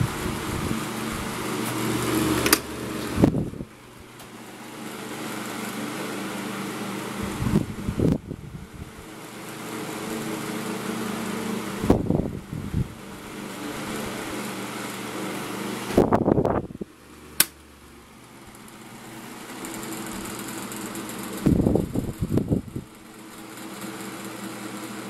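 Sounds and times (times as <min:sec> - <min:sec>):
table fan motor hum: 0:00.0 - 0:25.0
fan bearings clacking: 0:18.4 - 0:25.0.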